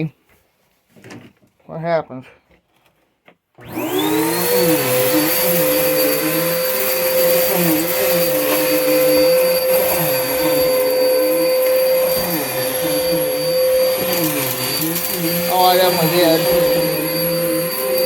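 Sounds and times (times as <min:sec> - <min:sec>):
vacuum cleaner running: 0:03.6 - 0:18.0.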